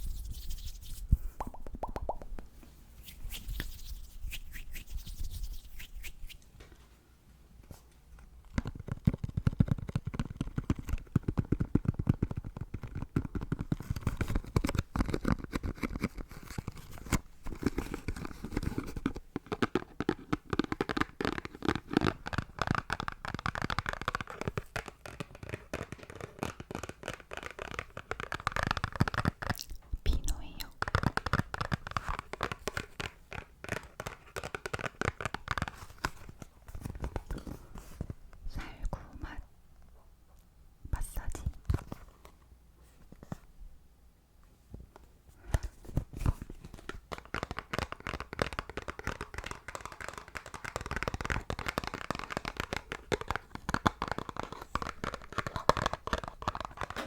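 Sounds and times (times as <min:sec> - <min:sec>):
asmr tapping: 0:01.4 - 0:02.5.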